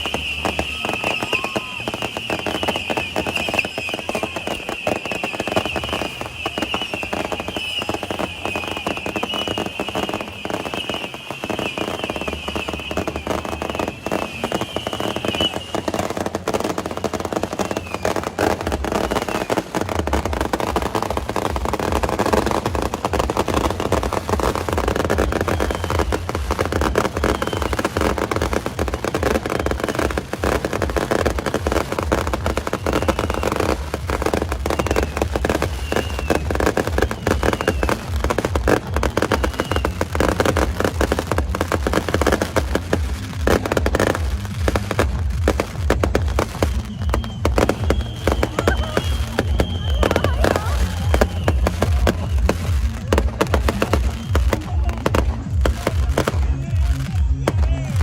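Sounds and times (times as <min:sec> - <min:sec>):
high wavering whistle: 0:00.0 - 0:16.1, 0:34.6 - 0:38.0, 0:46.5 - 0:51.8.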